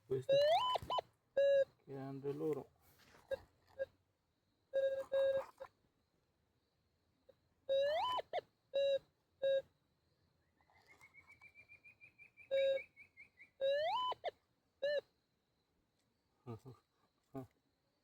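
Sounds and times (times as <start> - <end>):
metal detector beeping: 0.1 - 1.7.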